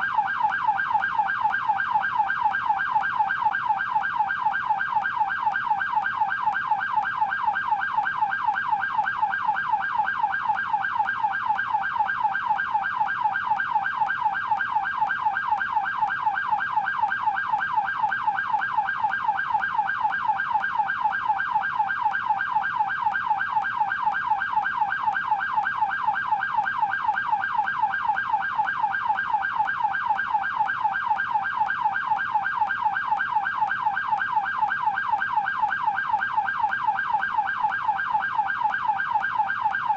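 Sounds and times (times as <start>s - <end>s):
police siren yelping: 0.0s - 39.9s.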